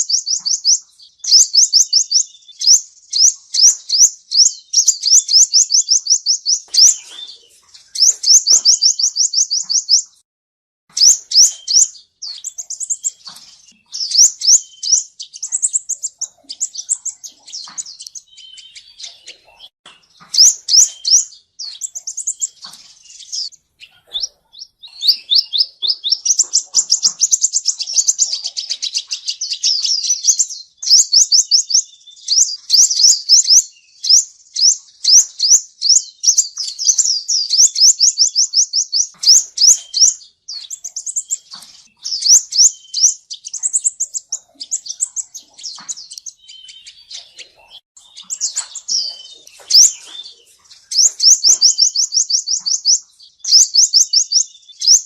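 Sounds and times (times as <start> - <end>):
bird singing high trills: 0.0 - 10.2, 10.9 - 55.0.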